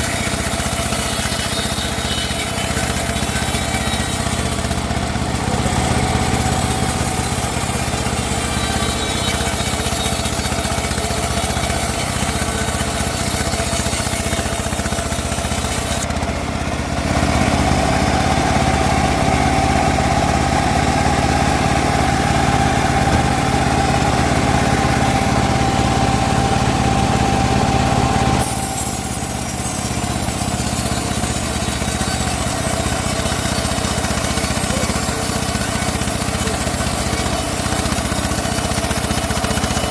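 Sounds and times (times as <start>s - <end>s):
bandsaw cutting wood: 0.0s - 39.9s.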